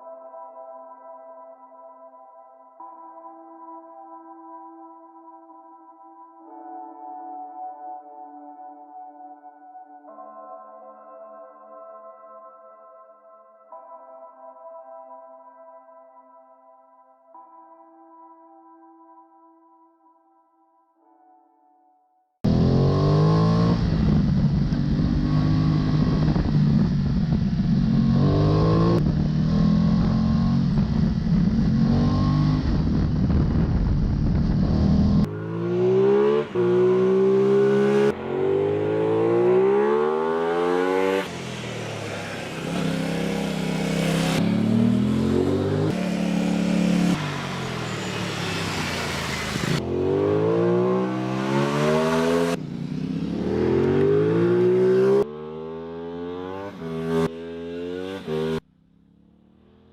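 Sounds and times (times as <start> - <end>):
motorcycle engine running steadily: 22.5 - 35.2
motorcycle engine revving: 22.5 - 59.9.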